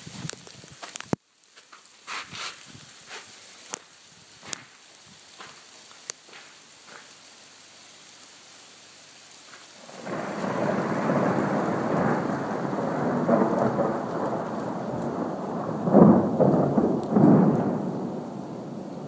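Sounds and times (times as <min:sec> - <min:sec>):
falling hail: 0:00.0 - 0:19.0
thunder rumbling: 0:09.8 - 0:19.0.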